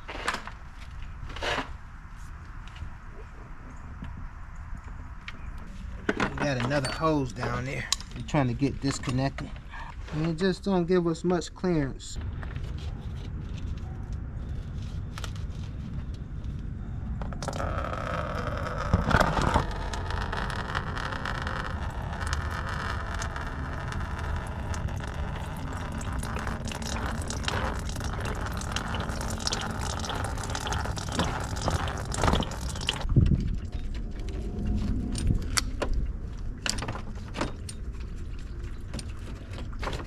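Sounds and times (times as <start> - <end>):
coolant pouring hiss: 24.2 - 33.0.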